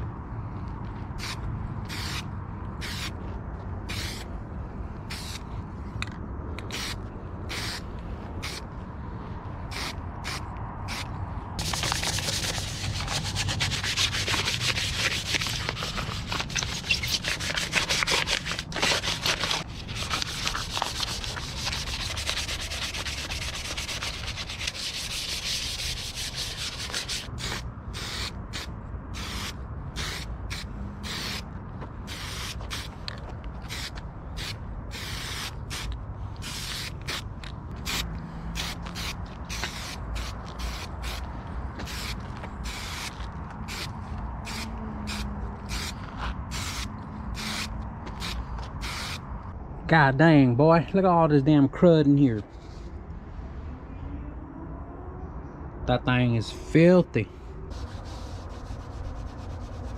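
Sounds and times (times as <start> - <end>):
hand sanding a surface: 11.6 - 27.6, 57.7 - 59.9.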